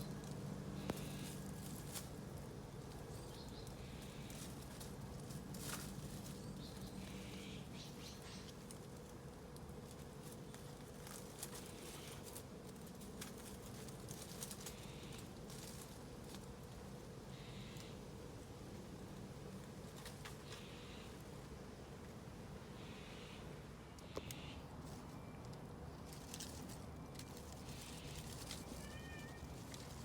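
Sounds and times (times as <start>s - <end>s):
soft rustles: 0.0s - 17.1s, 26.0s - 30.0s
steady low hum: 0.0s - 28.8s.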